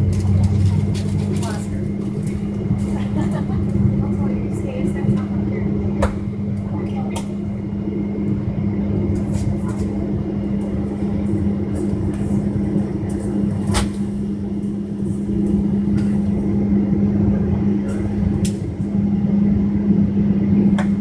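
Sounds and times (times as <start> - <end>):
aircraft cabin hum: 0.0 - 21.0.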